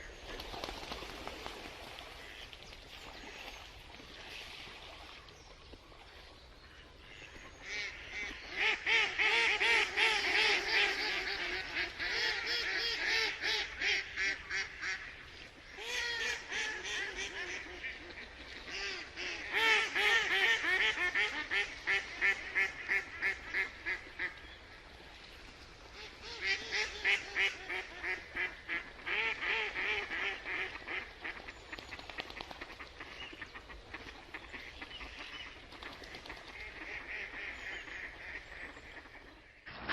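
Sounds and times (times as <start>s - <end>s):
ducks quacking: 6.7s - 24.4s, 26.0s - 39.9s.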